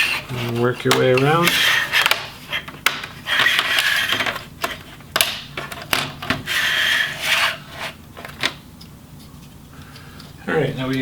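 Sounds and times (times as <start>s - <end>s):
plastic scraping and rubbing: 0.0s - 8.6s.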